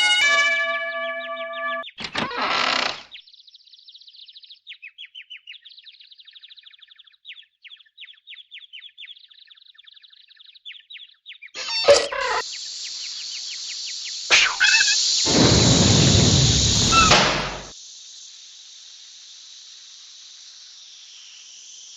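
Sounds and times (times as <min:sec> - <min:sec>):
cartoon bird chirping: 0:11.6 - 0:12.4, 0:14.3 - 0:15.1, 0:16.8 - 0:17.7
steady high hiss: 0:12.4 - 0:21.9
sudden loud burst: 0:14.3 - 0:17.7.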